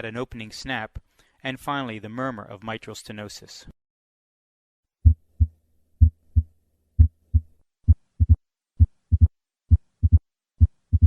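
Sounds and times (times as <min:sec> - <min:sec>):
heartbeat through stethoscope: 0:05.0 - 0:11.0.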